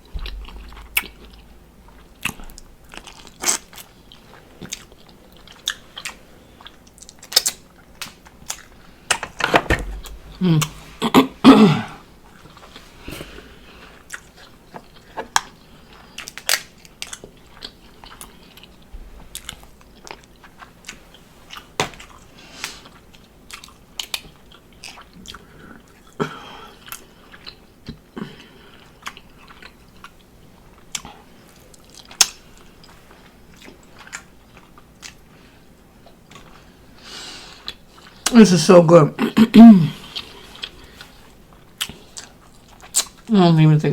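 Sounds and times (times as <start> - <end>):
person chewing and crunching food: 0.0 - 38.4, 39.8 - 43.3
person humming mm: 10.3 - 11.9.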